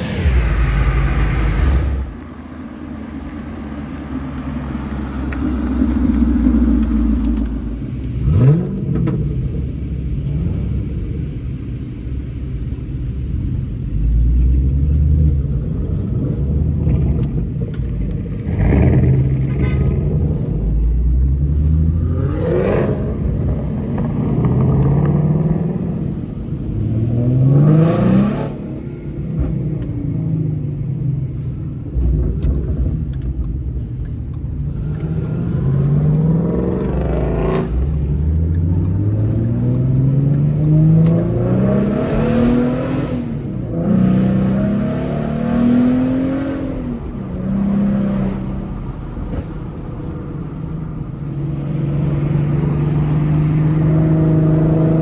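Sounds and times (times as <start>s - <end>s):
car engine accelerating: 0.0s - 55.0s.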